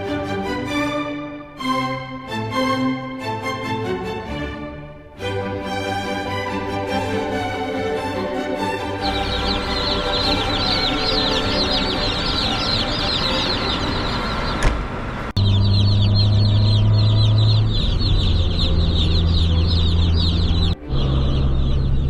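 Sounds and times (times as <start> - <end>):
chicks peeping: 8.8 - 14.7, 15.3 - 22.0.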